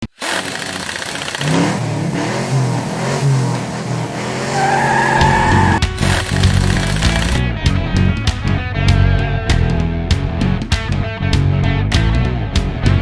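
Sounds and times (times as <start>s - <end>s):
car engine revving: 0.1s - 7.4s
tires squealing: 0.2s - 7.4s
heavy rock music: 5.0s - 13.0s.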